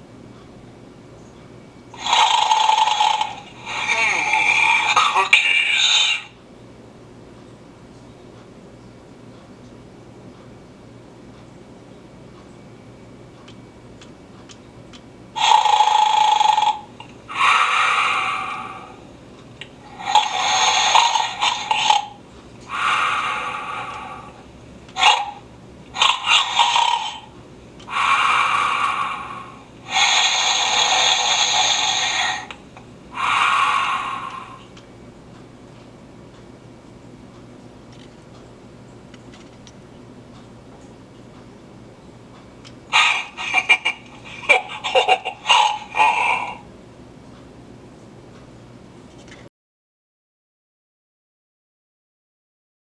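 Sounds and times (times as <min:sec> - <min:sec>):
tinny recorded snoring: 0:02.0 - 0:05.1, 0:15.4 - 0:19.0, 0:19.9 - 0:24.4, 0:26.0 - 0:27.3, 0:27.9 - 0:32.5, 0:33.2 - 0:34.6.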